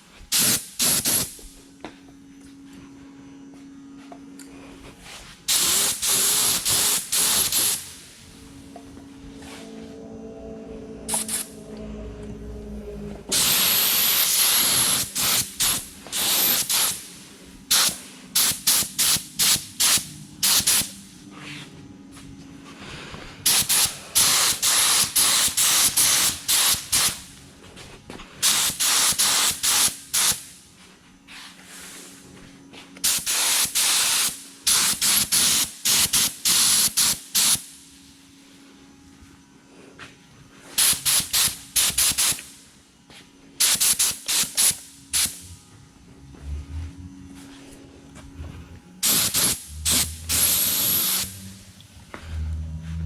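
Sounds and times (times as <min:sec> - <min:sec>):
spray gun spraying: 0:00.3 - 0:01.4, 0:05.5 - 0:08.2, 0:11.1 - 0:11.6, 0:13.3 - 0:21.0, 0:23.4 - 0:27.3, 0:28.4 - 0:30.6, 0:33.0 - 0:37.7, 0:40.7 - 0:42.5, 0:43.6 - 0:45.5, 0:49.0 - 0:51.6.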